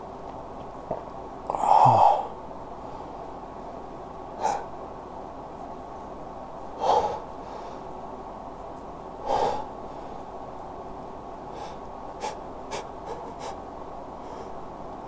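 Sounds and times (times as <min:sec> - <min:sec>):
man gasping breaths: 0:04.4 - 0:04.8, 0:06.8 - 0:07.9, 0:09.2 - 0:10.2, 0:11.5 - 0:13.6, 0:14.2 - 0:14.7.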